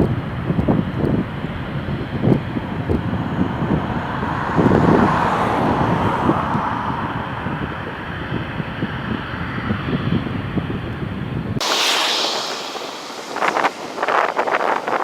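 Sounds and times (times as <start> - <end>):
wind buffeting microphone: 0.0 - 15.0
distant engine rush: 11.6 - 15.0.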